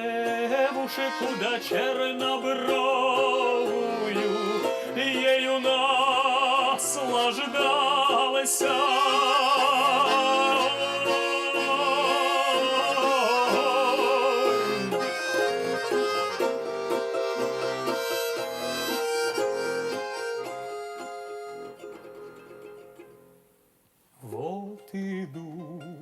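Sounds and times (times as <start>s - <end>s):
person singing with vibrato: 0.0s - 21.2s, 24.2s - 26.0s
button accordion playing: 0.6s - 2.7s, 3.4s - 5.2s, 8.8s - 22.4s.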